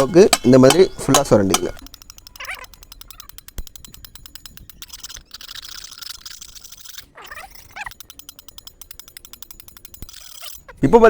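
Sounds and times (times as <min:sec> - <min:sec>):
spoon scraping cement: 0:00.0 - 0:10.9
short chirping call: 0:01.7 - 0:10.9.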